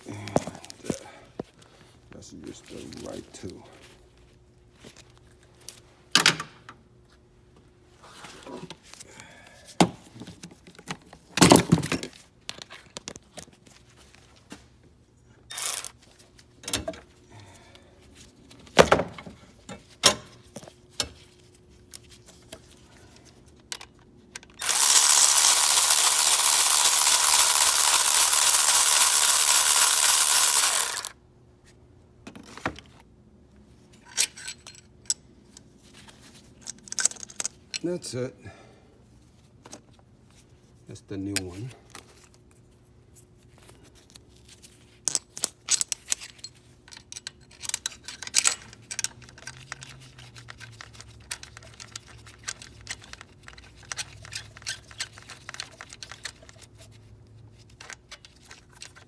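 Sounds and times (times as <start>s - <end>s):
cordless power tool running: 15.6s - 15.9s, 24.6s - 31.1s
metal tools clinking: 24.6s - 31.1s.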